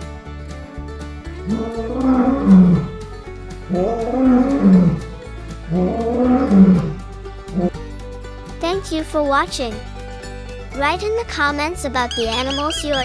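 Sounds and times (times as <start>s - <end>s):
background music with steady beat: 0.0s - 13.0s
animal calls rising and falling: 12.1s - 13.0s.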